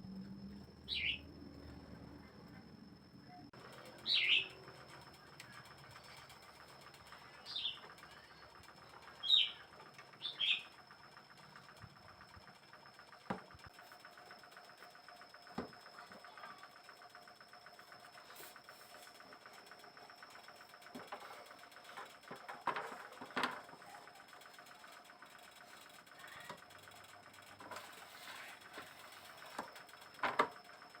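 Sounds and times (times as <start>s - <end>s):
bird chirping: 0.8s - 1.3s, 3.3s - 4.6s, 7.2s - 10.7s.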